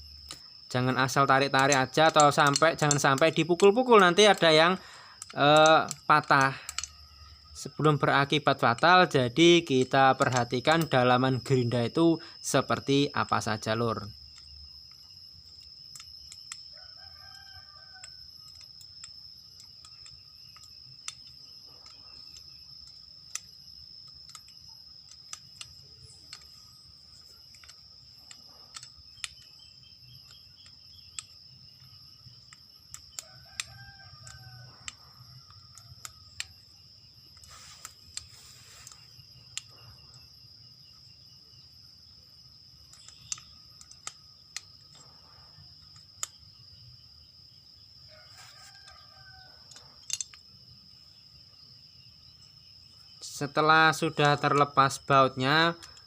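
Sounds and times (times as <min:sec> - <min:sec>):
high insect drone: 0:00.0 - 0:56.0
hand tools clicking on metal: 0:00.2 - 0:17.4, 0:18.0 - 0:36.6, 0:42.9 - 0:46.4, 0:49.6 - 0:50.4, 0:53.2 - 0:56.0.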